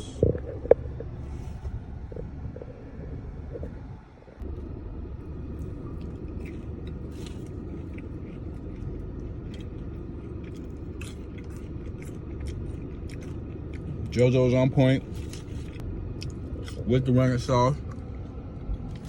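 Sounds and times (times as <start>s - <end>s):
steady low rumble: 0.0s - 19.0s
person chewing crunchy food: 5.2s - 17.0s, 17.8s - 19.0s.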